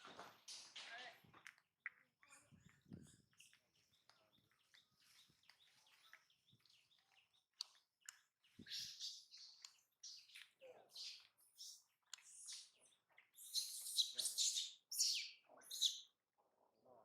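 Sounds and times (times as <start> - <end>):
high-pitched animal chirps: 13.4 - 16.0.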